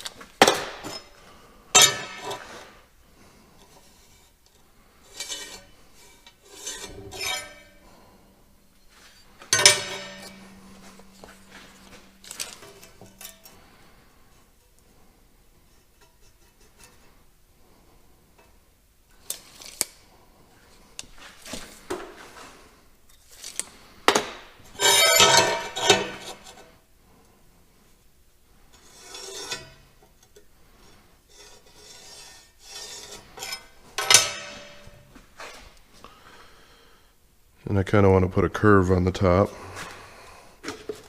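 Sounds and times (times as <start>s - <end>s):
metal scraping: 5.0s - 14.1s, 24.7s - 26.7s, 28.8s - 30.0s, 30.8s - 35.7s.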